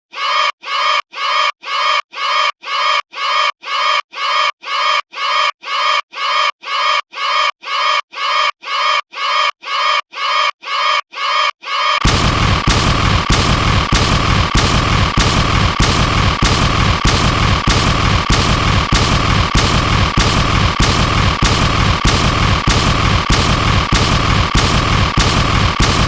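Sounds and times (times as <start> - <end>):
dense noisy sound with sharp cracks: 12.0 - 26.0
repeating short sound effect: 12.0 - 26.0.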